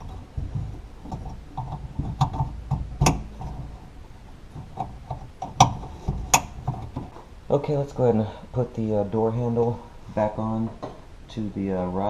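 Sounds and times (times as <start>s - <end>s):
knocks and rustling in door panel: 0.0s - 3.8s.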